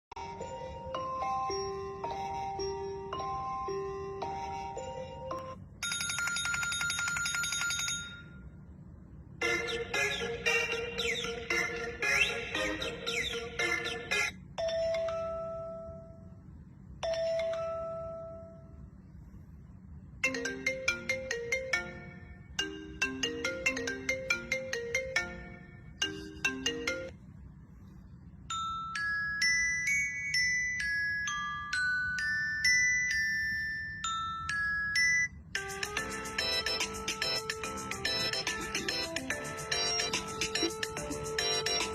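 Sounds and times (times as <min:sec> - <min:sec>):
phone ringtones: 0:00.2 - 0:08.5, 0:33.6 - 0:41.9.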